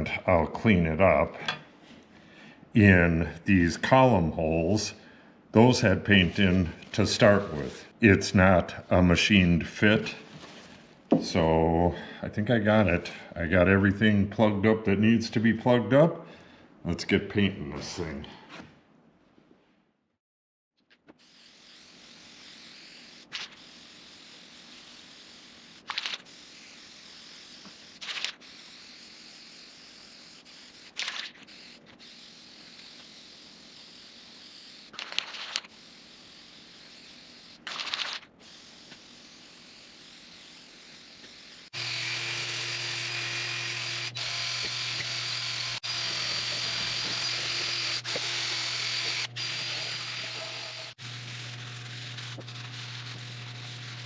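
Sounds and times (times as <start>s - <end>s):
spray paint hissing: 21.2s - 41.7s, 46.5s - 51.0s
electric hum with whining tones: 41.1s - 54.0s.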